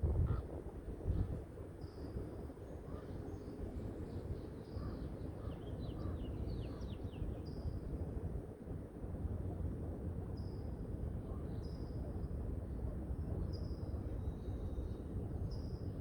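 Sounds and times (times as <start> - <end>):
wind rumble: 0.0 - 1.7.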